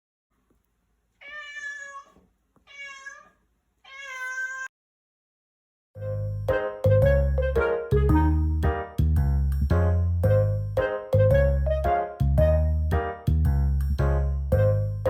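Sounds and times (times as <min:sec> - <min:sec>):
cat meowing: 0:01.2 - 0:04.7
background music: 0:06.0 - 0:15.0.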